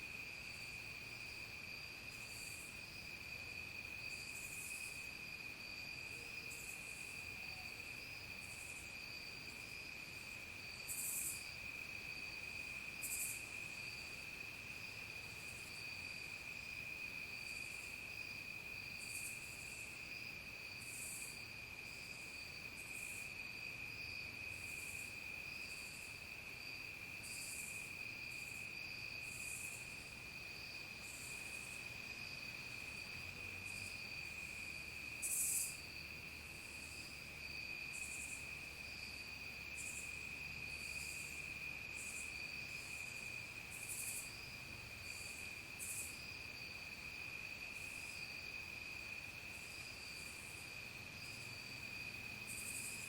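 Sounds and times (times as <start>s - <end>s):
buzzy insect calls: 10.6s - 11.6s, 13.0s - 14.0s, 27.2s - 39.1s, 39.7s - 46.7s, 52.4s - 53.0s.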